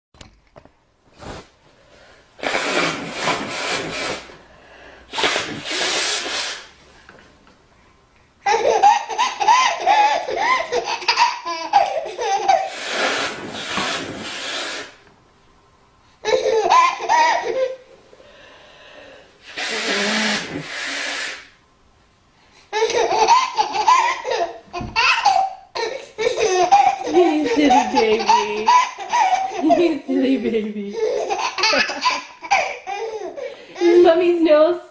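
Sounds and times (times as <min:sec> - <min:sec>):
baby laughing: 0:08.4 - 0:13.3, 0:16.2 - 0:17.8, 0:22.7 - 0:34.1.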